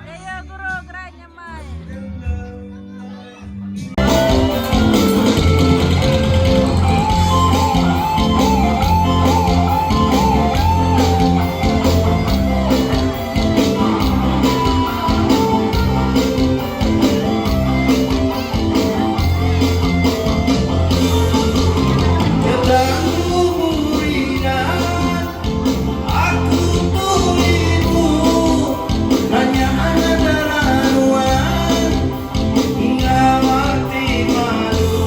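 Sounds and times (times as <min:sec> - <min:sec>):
music with steady beat: 0:03.8 - 0:35.0
wavering high melody: 0:04.0 - 0:24.0.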